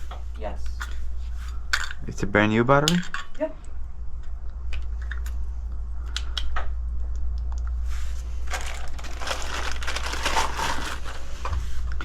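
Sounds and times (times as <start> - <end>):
steady low hum: 0.0 - 12.0
crinkling rustling handling noise: 7.8 - 12.0.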